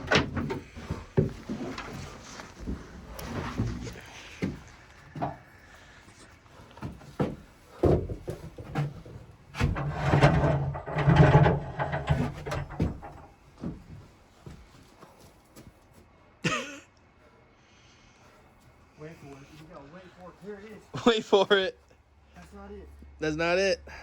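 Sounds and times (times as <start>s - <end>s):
wooden knocks and clunks: 0.0s - 5.6s, 6.7s - 14.6s
scraping and rubbing: 8.3s - 13.2s.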